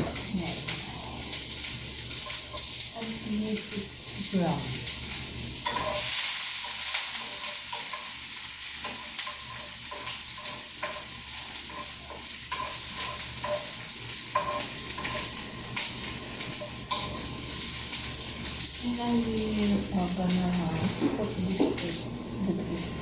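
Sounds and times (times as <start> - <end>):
garlic and onion sizzling: 0.0 - 23.0
utensil stirring in pan: 0.0 - 23.0.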